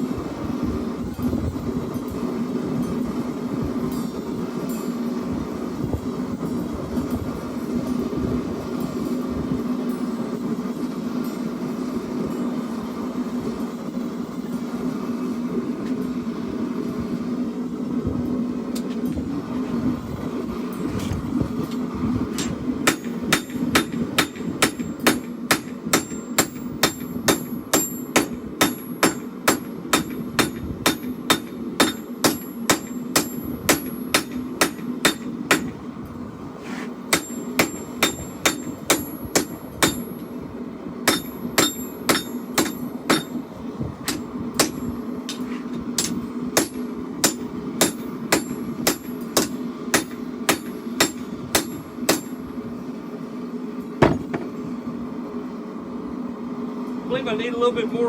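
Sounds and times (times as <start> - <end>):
steady low hum: 0.0 - 58.0
hammer striking steel on anvil: 22.4 - 35.8, 37.1 - 40.3, 41.0 - 43.4, 44.0 - 52.4.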